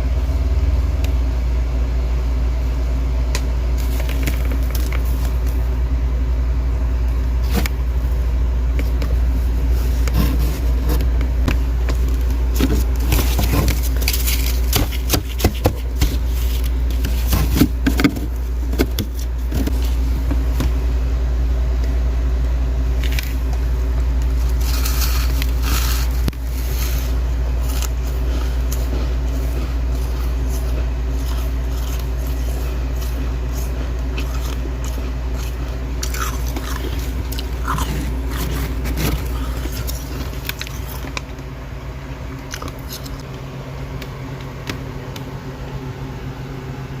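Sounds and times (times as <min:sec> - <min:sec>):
low machine hum: 0:00.0 - 0:47.0
frost scraping and crackling: 0:03.7 - 0:05.7, 0:07.1 - 0:20.8, 0:23.0 - 0:41.4.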